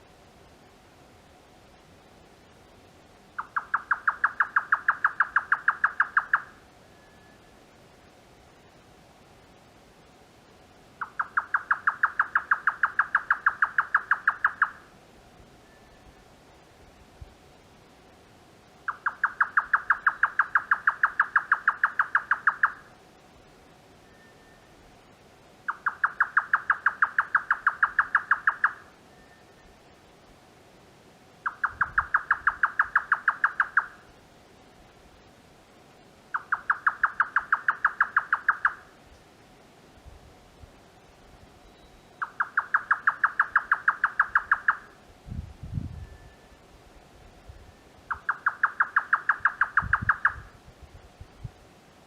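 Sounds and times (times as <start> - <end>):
nightjar call: 3.4 - 7.6, 11.0 - 15.0, 18.9 - 23.0, 25.7 - 29.8, 31.4 - 34.1, 36.3 - 39.0, 41.6 - 45.0, 47.4 - 50.6.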